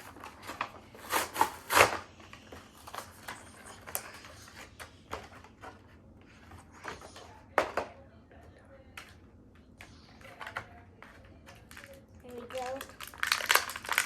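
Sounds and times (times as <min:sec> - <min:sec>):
plastic and cardboard packaging crinkling: 0:00.0 - 0:07.0, 0:10.3 - 0:14.0.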